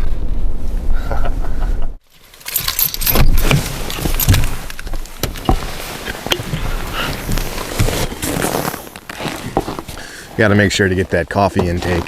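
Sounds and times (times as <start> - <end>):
gear jangling and clattering: 2.1 - 7.8
sharp clicks and knocks: 2.4 - 6.6.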